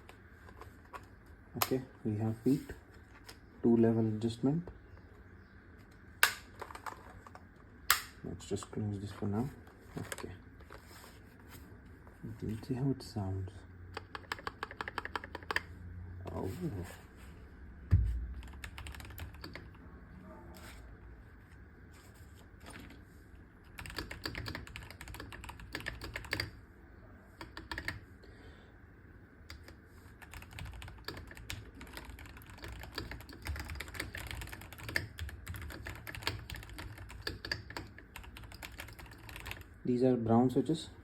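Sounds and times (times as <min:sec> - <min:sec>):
mechanical keyboard typing: 0:13.9 - 0:15.7, 0:18.3 - 0:19.8, 0:23.6 - 0:26.6, 0:27.4 - 0:28.0, 0:29.5 - 0:39.7.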